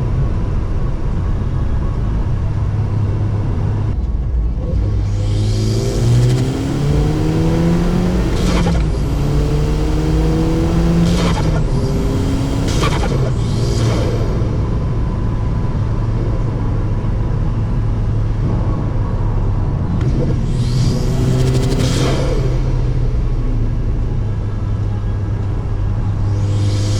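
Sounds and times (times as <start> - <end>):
turbocharged car engine revving: 0.0 - 26.9
turbo flutter whooshes: 5.0 - 16.4, 25.8 - 26.9.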